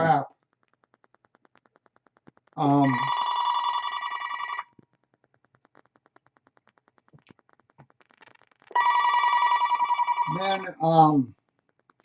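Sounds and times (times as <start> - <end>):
telephone ringing: 2.6 - 4.8, 8.7 - 10.8.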